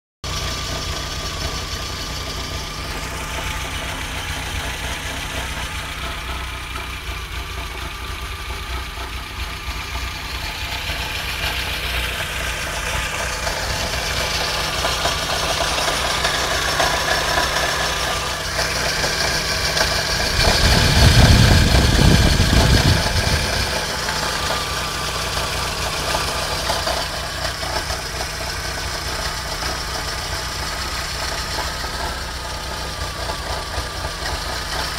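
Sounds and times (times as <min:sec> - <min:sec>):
car engine running: 0:00.2 - 0:34.9
low rumble: 0:02.4 - 0:25.9.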